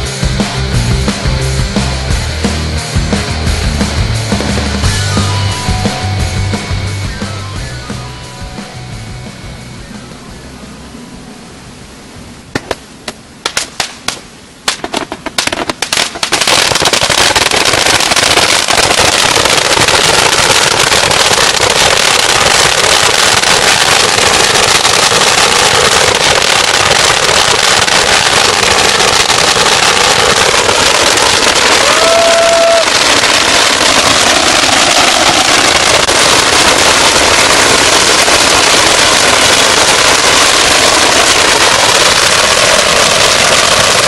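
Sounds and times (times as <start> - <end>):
firecrackers banging and crackling: 0.0 - 10.5, 12.5 - 44.0
brief whistle tone: 4.9 - 11.2.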